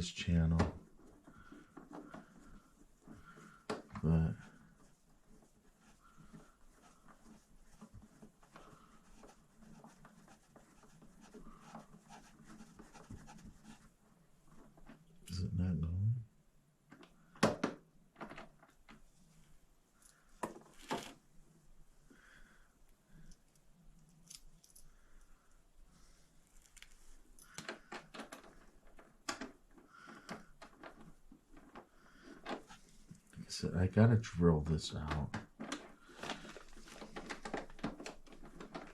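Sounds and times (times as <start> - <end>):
faint scratching: 0.0 - 15.6.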